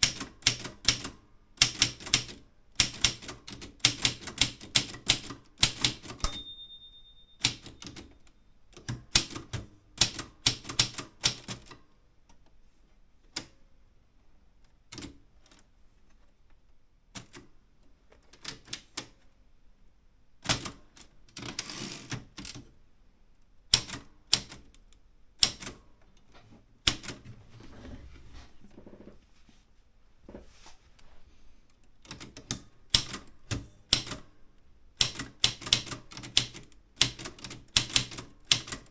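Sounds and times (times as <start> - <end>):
typewriter keys striking: 0.0 - 8.1, 35.0 - 38.9
short ringing tone: 6.2 - 7.6.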